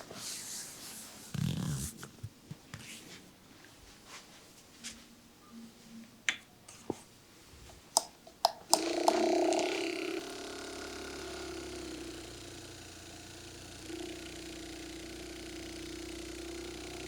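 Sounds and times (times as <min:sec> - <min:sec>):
steady mechanical hum: 0:08.8 - 0:17.0.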